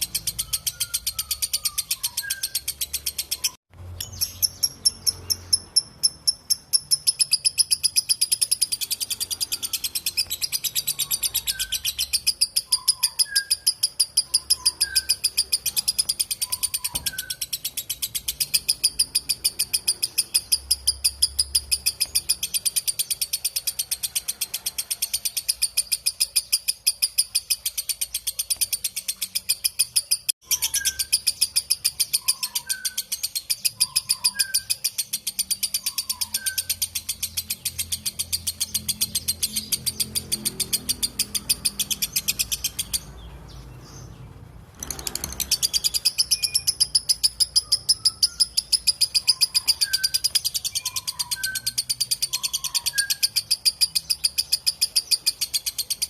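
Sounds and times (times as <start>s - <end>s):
soft low bird chirps: 0.0s - 23.2s
bird chattering shrill trill: 0.0s - 43.1s, 44.8s - 56.0s.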